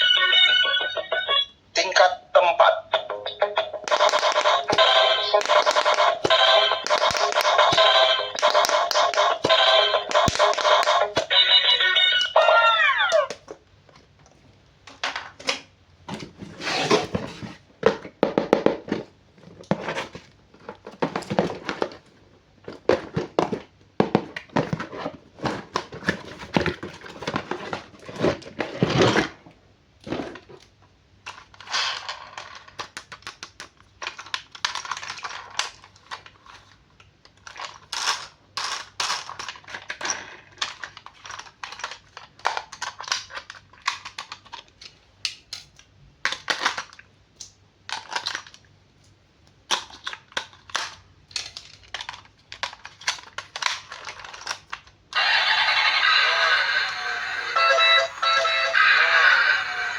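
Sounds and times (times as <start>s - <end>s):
plastic toys clicking and tapping: 3.8s - 12.4s, 30.1s - 55.4s
packaging rustling: 3.9s - 12.3s, 18.9s - 29.5s.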